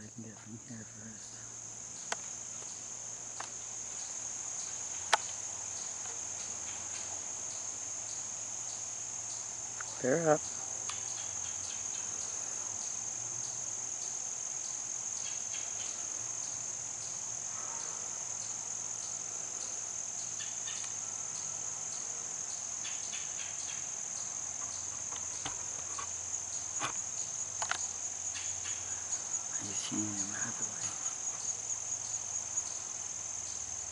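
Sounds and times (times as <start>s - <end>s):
crickets chirping: 0.0s - 33.9s
faint clicks: 27.6s - 27.9s.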